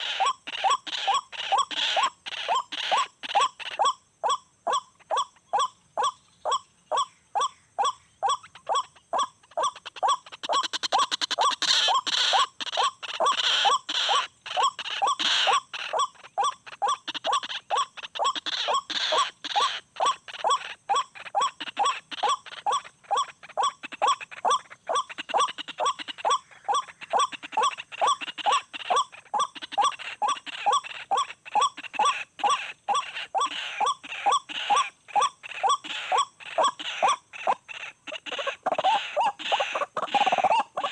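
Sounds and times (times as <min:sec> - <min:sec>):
bird calling: 0:00.0 - 0:40.9.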